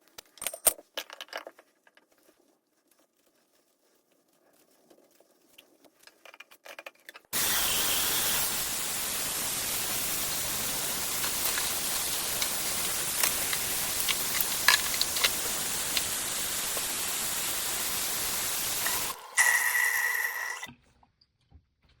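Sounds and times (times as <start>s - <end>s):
faucet water running into sink: 7.4s - 20.7s
whistly water flow: 7.4s - 20.7s.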